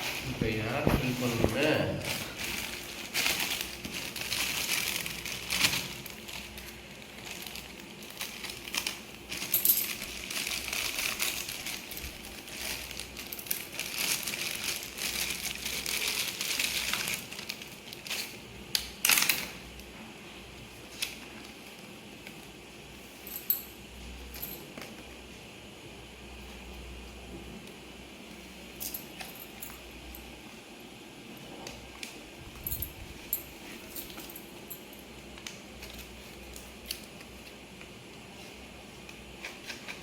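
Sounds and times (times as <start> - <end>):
plastic rustling and crinkling: 0.0 - 19.7.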